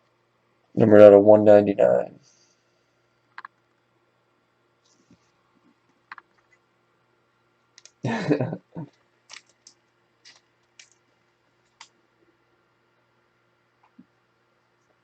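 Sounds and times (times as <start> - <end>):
cards clicking and rustling: 8.9 - 12.0
packaging scraping and crackling: 9.3 - 11.0.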